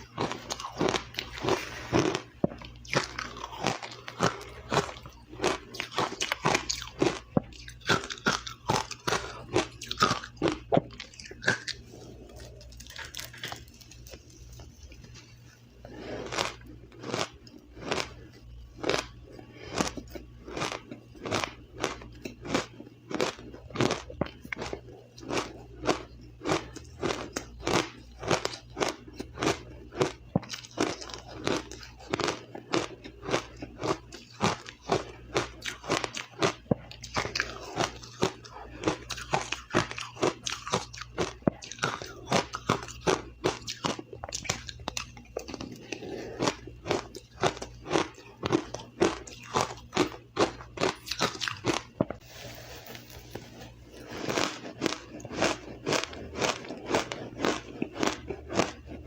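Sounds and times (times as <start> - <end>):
ice crunching: 51.6 - 57.8.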